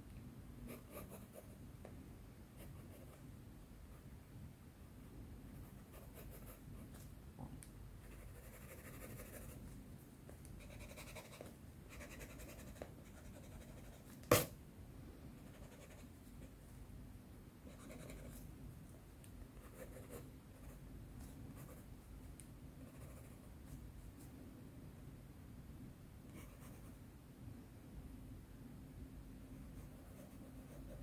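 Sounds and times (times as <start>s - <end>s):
pencil scratching on paper: 0.7s - 1.6s, 5.5s - 7.1s, 8.0s - 9.7s, 10.6s - 14.1s, 15.4s - 16.7s, 17.7s - 18.5s, 19.6s - 21.9s, 22.8s - 23.9s, 26.3s - 27.0s, 29.6s - 31.0s.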